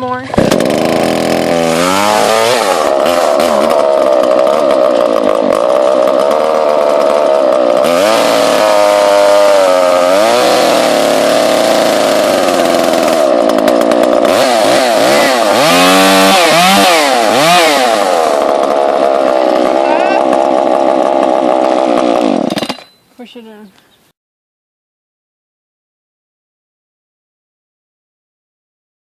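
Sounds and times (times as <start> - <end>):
chainsaw engine running: 0.0 - 22.9.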